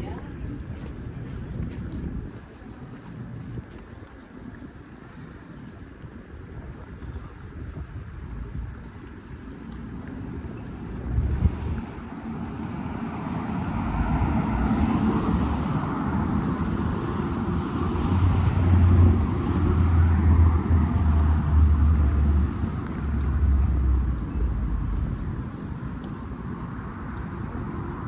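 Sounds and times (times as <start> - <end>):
vehicles passing: 8.2 - 28.0.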